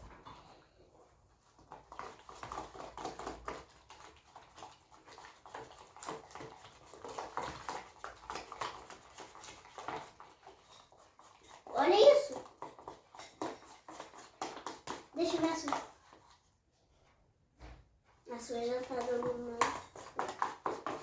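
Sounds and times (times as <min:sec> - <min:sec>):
slime squelching by hand: 0:00.0 - 0:16.4.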